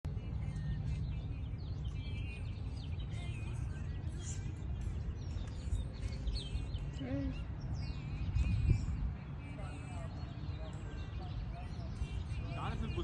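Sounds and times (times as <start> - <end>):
steady low rumble: 0.0 - 12.9
small birds chirping: 0.1 - 13.0.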